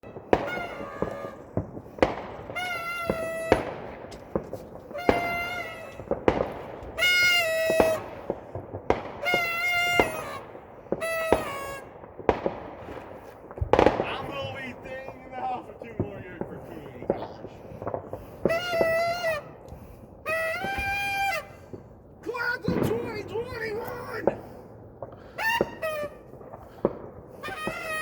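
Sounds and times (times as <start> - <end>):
firecracker bangs: 0.0 - 28.0.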